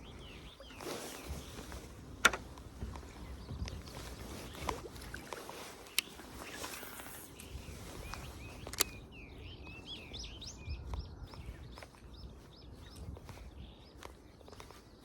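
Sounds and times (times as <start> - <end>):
songbird twittering: 0.0 - 5.2, 5.8 - 15.0.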